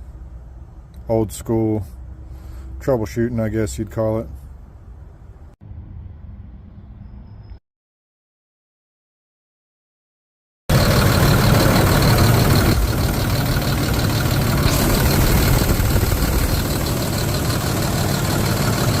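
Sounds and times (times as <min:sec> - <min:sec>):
truck engine idling: 0:10.7 - 0:19.0.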